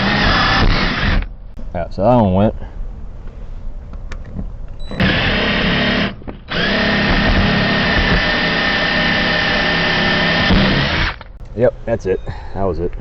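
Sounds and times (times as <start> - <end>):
power drill whining: 0.0 - 1.3, 4.9 - 11.3.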